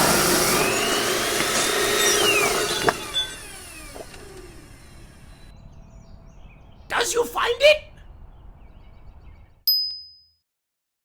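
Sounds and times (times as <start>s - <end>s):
wood chipper whirring and grinding: 0.0s - 5.6s.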